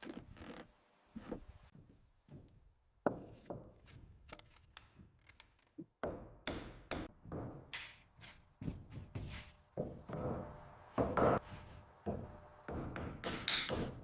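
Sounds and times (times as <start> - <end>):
hand tools striking wood: 6.0 - 14.0.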